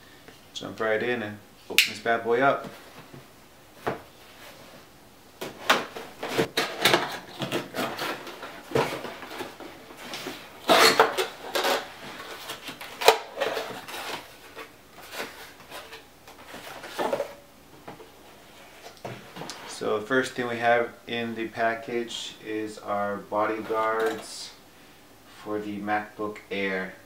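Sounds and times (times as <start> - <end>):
package rustling and tearing: 5.7 - 17.2.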